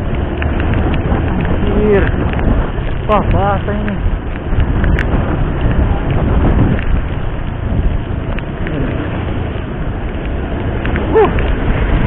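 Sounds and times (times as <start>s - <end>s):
heavy rain pouring: 0.0s - 12.0s
wind noise on microphone: 0.0s - 12.0s.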